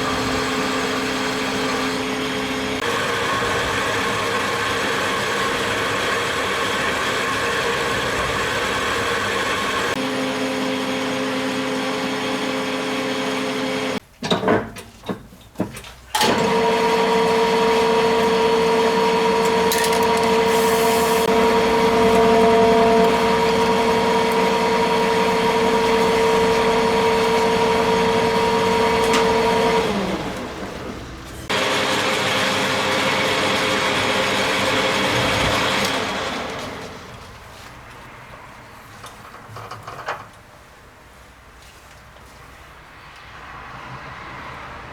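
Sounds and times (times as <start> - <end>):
machine tool motor whining: 0.0 - 14.0, 16.2 - 37.2.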